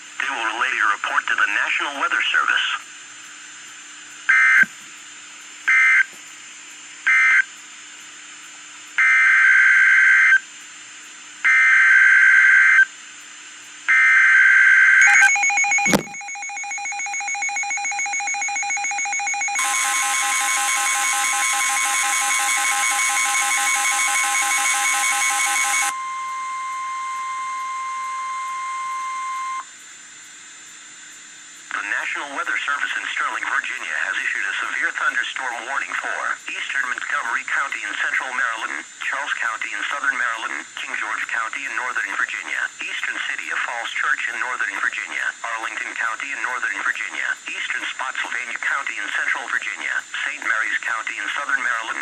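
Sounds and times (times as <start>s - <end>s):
data squawks: 15.0s - 29.6s
harsh buzzy attention signal: 15.0s - 29.7s.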